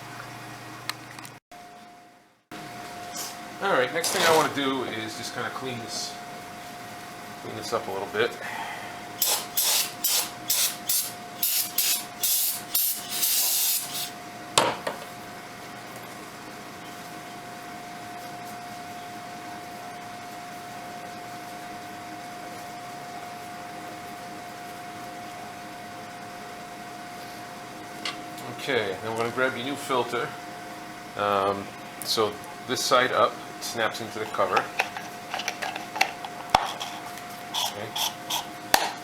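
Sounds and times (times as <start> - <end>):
aerosol spray hissing: 9.2 - 14.1.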